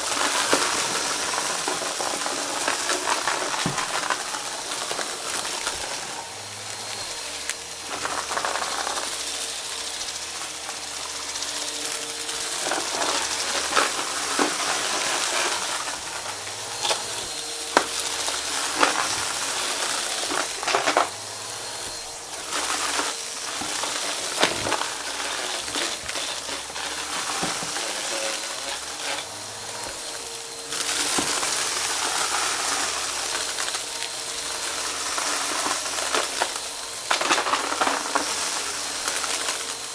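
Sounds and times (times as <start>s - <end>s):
debris crackling in vacuum: 0.0s - 39.9s
vacuum cleaner running: 0.0s - 39.9s.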